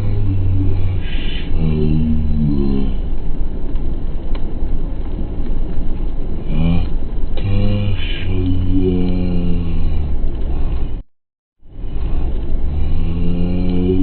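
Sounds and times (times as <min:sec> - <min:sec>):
deep bending pitched tones: 0:00.0 - 0:04.7, 0:05.6 - 0:11.0
constant low rumble: 0:00.0 - 0:14.0.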